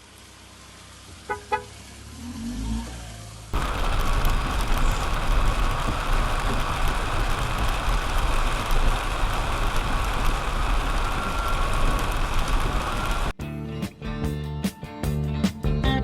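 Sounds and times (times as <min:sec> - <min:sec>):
water rushing: 0:03.6 - 0:13.3.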